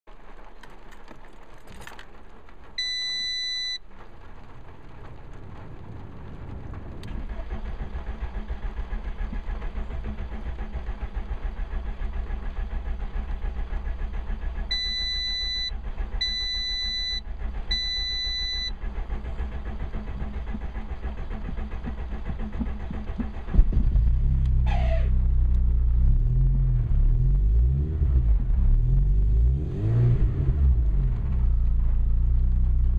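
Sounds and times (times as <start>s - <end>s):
car engine cranking: 0.2s - 32.9s
electronic beep: 2.8s - 3.8s, 14.7s - 18.7s
car engine revving unevenly: 4.2s - 32.9s.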